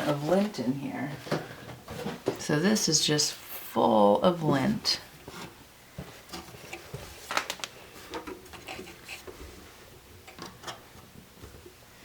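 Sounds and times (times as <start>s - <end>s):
lint scratching and rustling: 6.2s - 11.6s.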